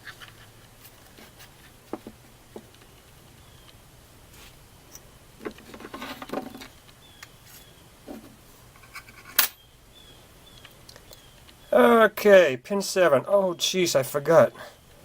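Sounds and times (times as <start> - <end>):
rustling and scraping: 0.0 - 3.2, 4.3 - 9.6
clicks and scrapes of handling: 4.3 - 6.8, 7.4 - 9.6.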